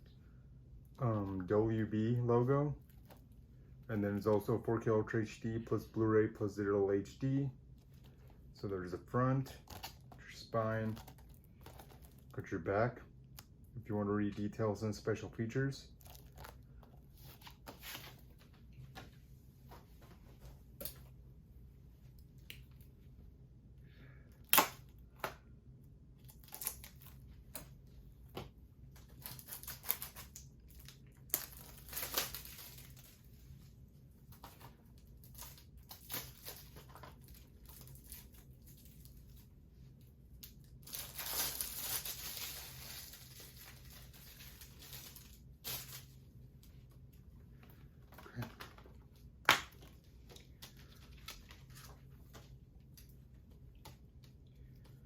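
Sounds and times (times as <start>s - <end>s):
plastic wrap tearing and crumpling: 9.4s - 10.2s, 16.0s - 16.6s, 26.2s - 27.2s, 29.0s - 33.5s, 34.3s - 39.4s, 40.4s - 46.2s.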